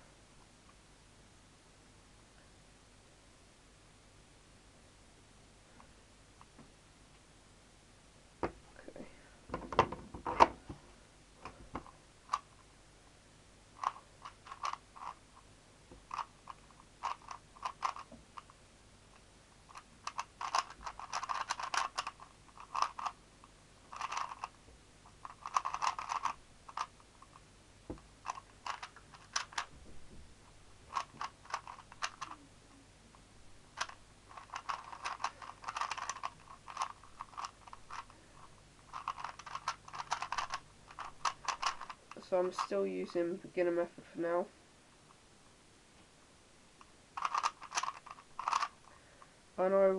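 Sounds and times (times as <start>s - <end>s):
speed cube clicking turns: 12.3s - 12.5s, 13.8s - 15.2s, 16.0s - 18.5s, 19.1s - 23.2s, 23.9s - 24.6s, 25.2s - 29.7s, 30.9s - 32.4s, 33.8s - 42.7s, 47.2s - 48.8s.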